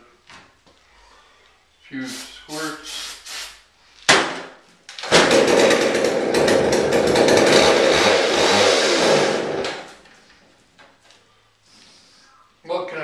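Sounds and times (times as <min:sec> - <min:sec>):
chainsaw engine running rough: 0:05.1 - 0:09.9.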